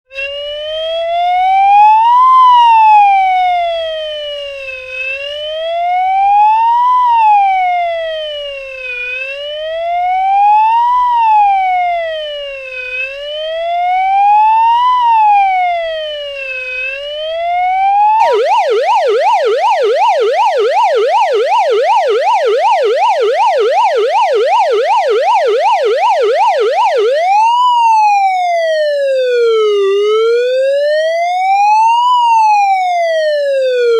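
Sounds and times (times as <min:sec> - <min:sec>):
emergency vehicle siren wailing: 0:00.1 - 0:33.9.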